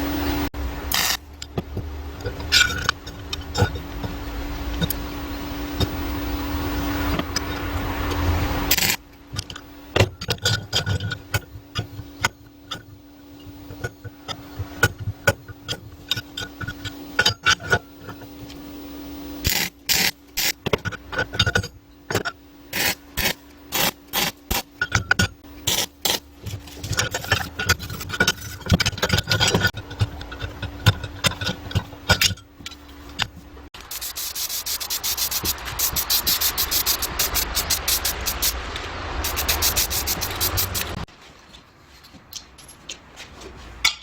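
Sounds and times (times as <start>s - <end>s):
hand tool scraping material: 33.1s - 38.6s, 39.2s - 41.0s.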